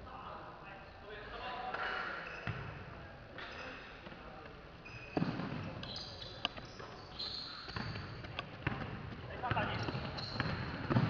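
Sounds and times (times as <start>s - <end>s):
shoe squeaks: 1.9s - 2.8s, 3.4s - 4.0s, 4.8s - 11.0s
basketball bouncing on court: 2.4s - 2.8s, 5.1s - 11.0s.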